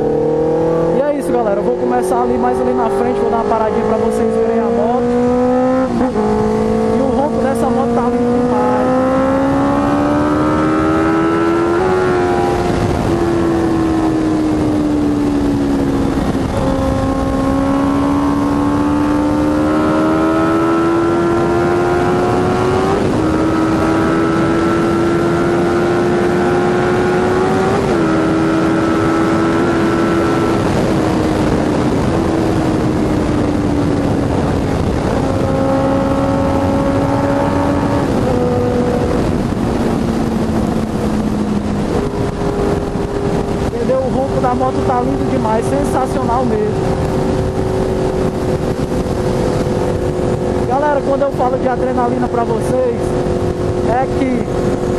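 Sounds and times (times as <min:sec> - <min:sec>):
gear changes: 0:00.0 - 0:54.9
motorcycle engine accelerating: 0:00.0 - 0:54.9.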